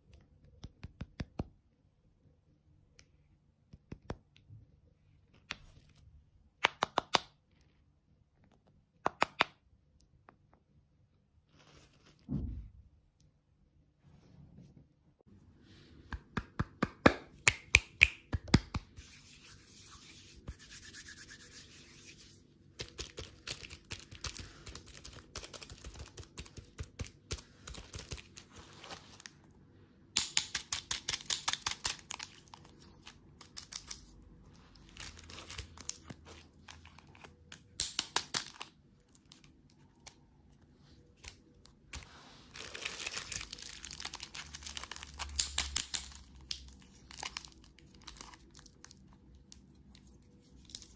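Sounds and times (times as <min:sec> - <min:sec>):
plastic packaging crinkling and tearing: 0:22.8 - 0:26.4, 0:34.8 - 0:37.3, 0:42.5 - 0:50.9.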